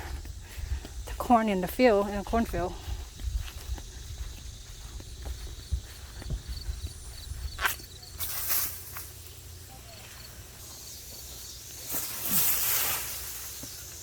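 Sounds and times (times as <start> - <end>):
corn husks rustling: 7.5 - 14.0.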